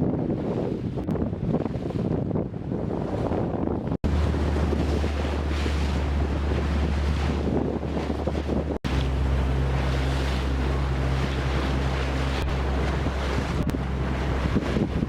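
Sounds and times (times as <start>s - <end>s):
wind buffeting microphone: 0.0s - 15.0s
boat engine humming: 4.0s - 15.0s
rushing water: 4.0s - 15.0s.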